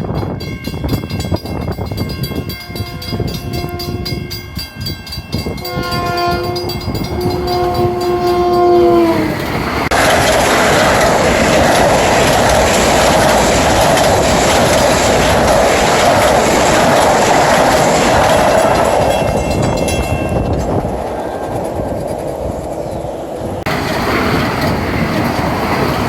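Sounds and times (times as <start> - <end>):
train running by: 0.0 - 26.0
train horn chord: 2.5 - 4.4, 5.6 - 9.5.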